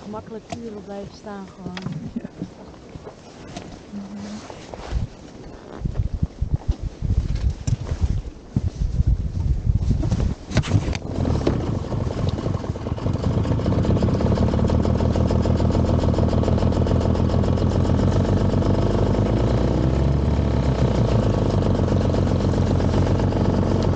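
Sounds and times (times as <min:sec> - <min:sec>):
boat engine starting and idling: 0:10.5 - 0:23.9
engine knocks: 0:10.5 - 0:23.9.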